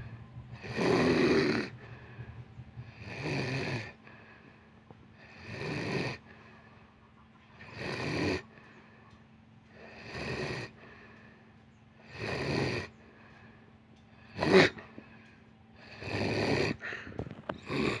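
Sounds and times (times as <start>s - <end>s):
faint steady hum: 0.0s - 18.0s
person snoring: 0.6s - 1.9s, 2.9s - 4.0s, 5.2s - 6.3s, 9.7s - 10.9s, 12.0s - 12.9s, 14.2s - 14.8s, 15.8s - 18.0s.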